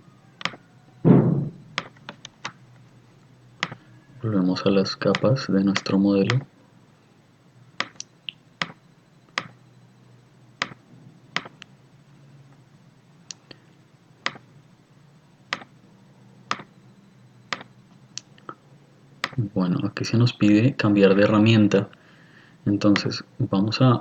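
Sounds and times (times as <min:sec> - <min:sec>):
faint low hum: 0:00.0 - 0:24.0
computer mouse clicking: 0:00.4 - 0:00.6, 0:03.6 - 0:03.8, 0:07.8 - 0:09.6, 0:10.6 - 0:10.8, 0:14.2 - 0:14.4, 0:16.5 - 0:16.7.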